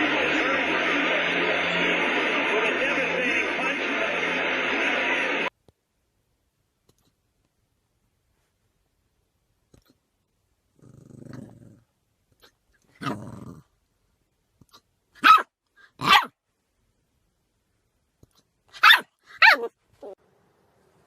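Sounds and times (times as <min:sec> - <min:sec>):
dog growling: 0:10.8 - 0:11.9, 0:13.0 - 0:13.7
dog barking: 0:15.2 - 0:16.4, 0:18.8 - 0:19.7.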